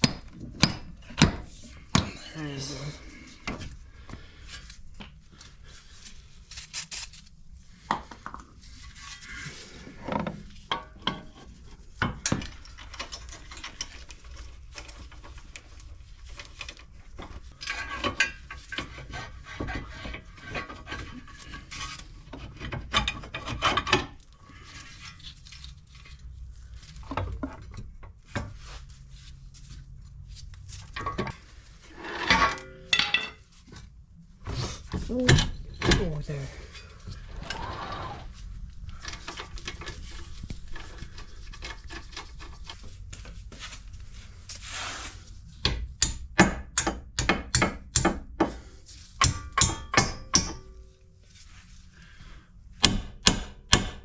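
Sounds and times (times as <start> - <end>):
metal tools scraping and clinking: 12.1 - 26.3, 30.9 - 33.6, 35.1 - 38.3, 38.9 - 42.8.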